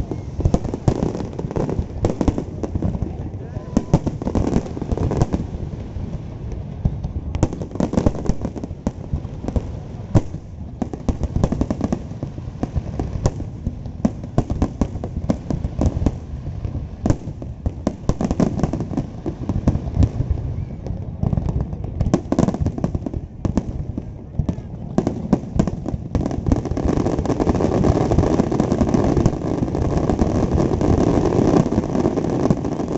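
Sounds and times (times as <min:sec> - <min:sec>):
fireworks booming and crackling: 0:00.0 - 0:32.9.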